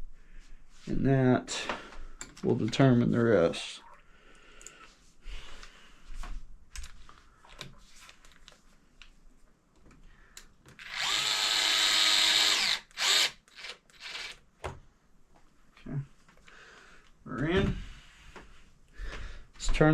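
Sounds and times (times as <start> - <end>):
power drill driving screw: 10.8 - 14.4.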